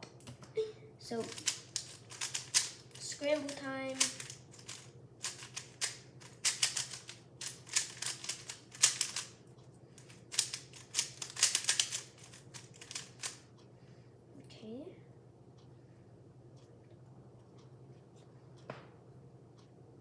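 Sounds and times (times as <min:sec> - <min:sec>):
speed cube clicking: 0:01.2 - 0:09.4, 0:10.0 - 0:13.4.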